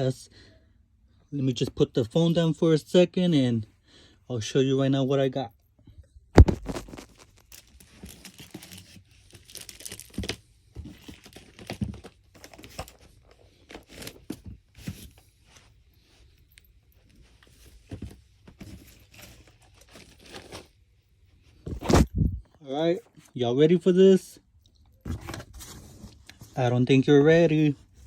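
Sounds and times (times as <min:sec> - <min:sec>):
packaging rustling and crinkling: 0:06.4 - 0:15.8, 0:17.0 - 0:20.9.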